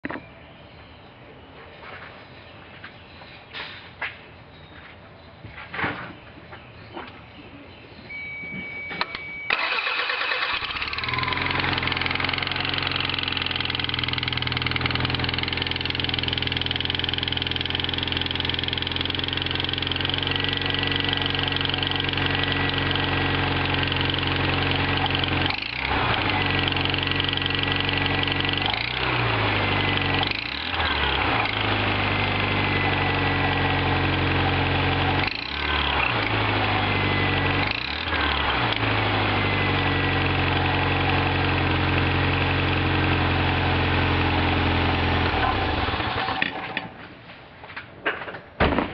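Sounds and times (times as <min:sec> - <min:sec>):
car engine starting and idling: 0:08.1 - 0:47.0.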